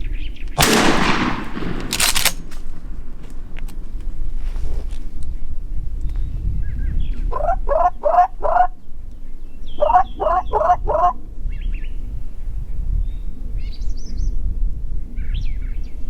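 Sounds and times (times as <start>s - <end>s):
wind rumble on microphone: 0.0s - 16.0s
turkey yelping: 7.3s - 8.7s, 9.8s - 11.2s.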